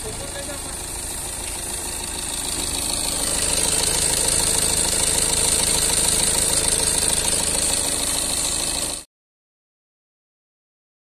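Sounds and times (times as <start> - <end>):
diesel engine idling: 0.0 - 9.1.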